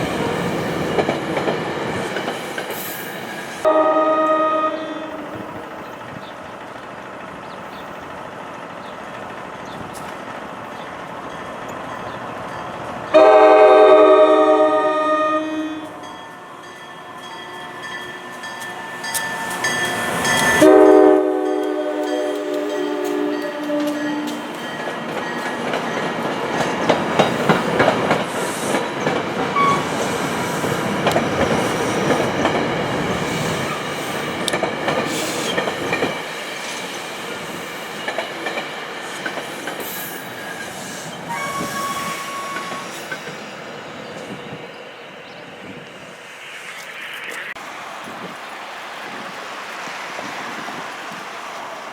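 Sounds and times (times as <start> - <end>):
train wheels clicking over rail joints: 0.0 - 3.7, 5.3 - 13.1, 21.6 - 44.5
train horn chord: 3.6 - 5.4, 13.1 - 24.5.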